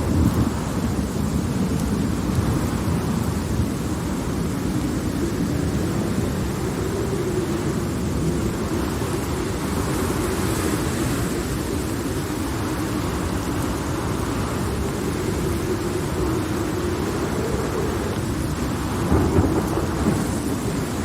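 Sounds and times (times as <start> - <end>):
distant rolling thunder: 0.0 - 21.0
rain: 0.0 - 21.0.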